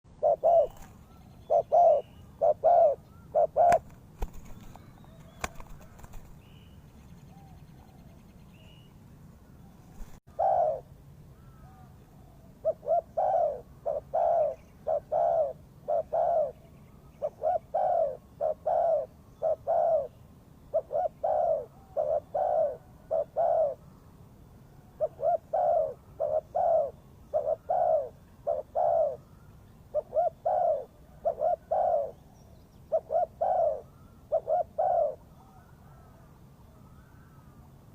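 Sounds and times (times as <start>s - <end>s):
dove cooing: 0.1s - 6.4s, 9.9s - 23.9s, 24.8s - 32.3s, 32.9s - 36.3s.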